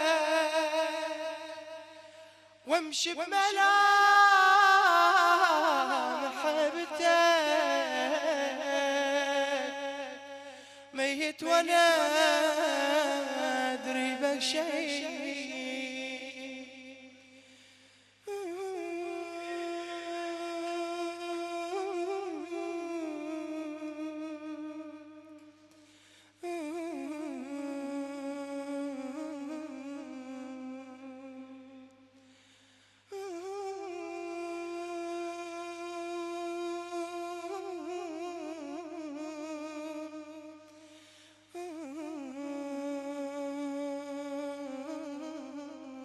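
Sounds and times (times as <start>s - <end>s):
man chanting wordless phrases: 0.0s - 1.8s, 2.6s - 17.0s.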